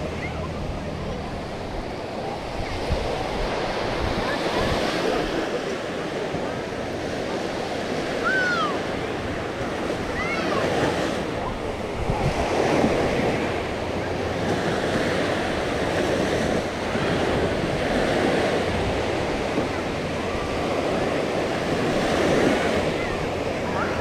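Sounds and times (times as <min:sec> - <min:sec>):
waves washing onto beach: 0:00.0 - 0:24.0
wind buffeting microphone: 0:00.0 - 0:24.0.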